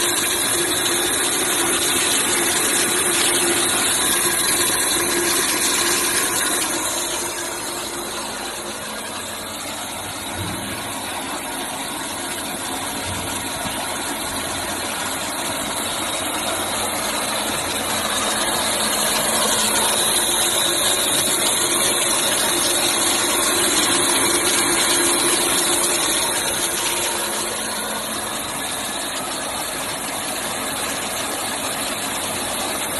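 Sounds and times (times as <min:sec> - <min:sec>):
pellet extruder running with hiss: 0:00.0 - 0:32.9.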